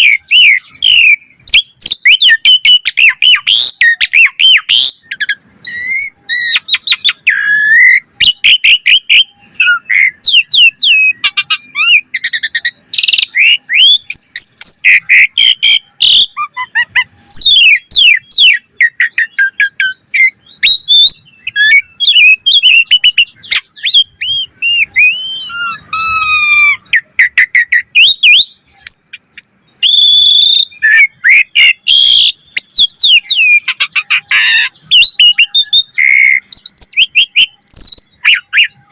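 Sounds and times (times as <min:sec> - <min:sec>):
starling singing: 0:00.0 - 0:38.9.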